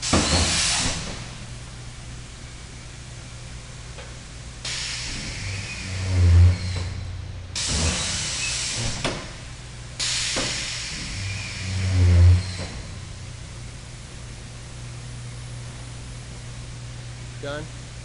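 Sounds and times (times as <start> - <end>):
low machine hum: 0.0 - 18.0
blasting machine hiss: 4.6 - 9.4, 10.0 - 13.1.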